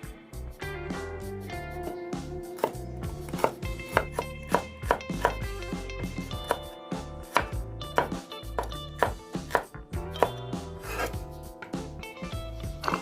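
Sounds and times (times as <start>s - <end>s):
background music: 0.0s - 13.0s
knife chopping on cutting board: 2.6s - 5.5s, 6.5s - 11.9s, 12.8s - 13.0s.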